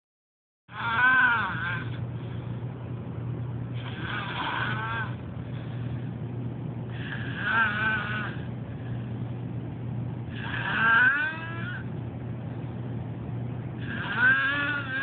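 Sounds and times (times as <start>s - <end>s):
steady low hum: 0.7s - 15.0s
whistling snoring: 3.8s - 5.2s, 6.9s - 8.5s, 10.3s - 11.9s, 13.8s - 15.0s.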